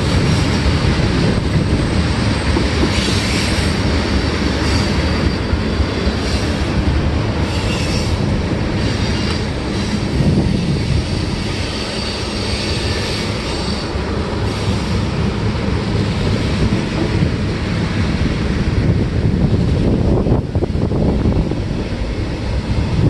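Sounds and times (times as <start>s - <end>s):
train wheels rumbling on rails: 0.0s - 23.0s.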